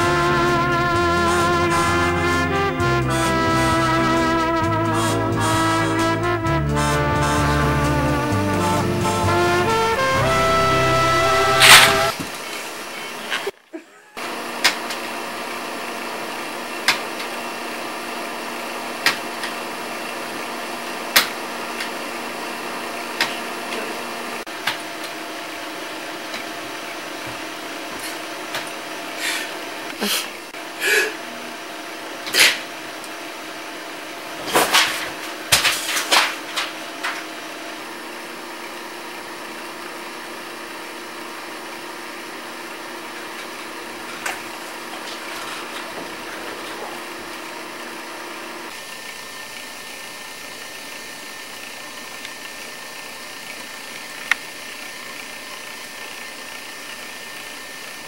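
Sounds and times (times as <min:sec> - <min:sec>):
person sneezing: 0:29.2 - 0:31.4.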